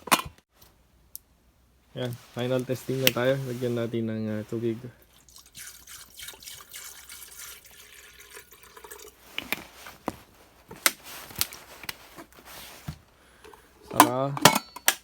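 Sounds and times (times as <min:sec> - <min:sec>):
water running into kettle: 0:05.0 - 0:09.7.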